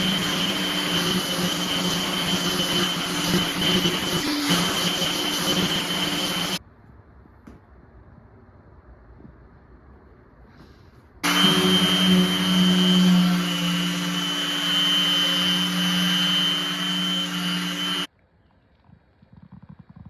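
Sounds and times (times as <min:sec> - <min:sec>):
power tool motor whining: 0:00.0 - 0:06.6, 0:11.2 - 0:18.1.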